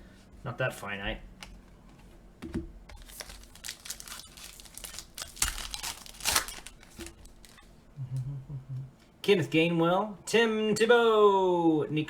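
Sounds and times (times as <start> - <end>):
card pack wrapper crinkling and tearing: 2.9 - 7.7.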